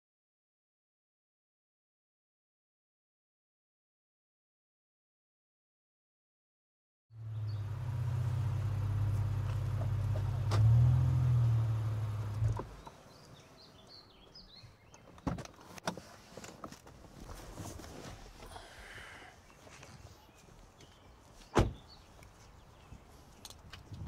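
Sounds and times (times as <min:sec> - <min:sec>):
car engine running: 0:07.2 - 0:12.9.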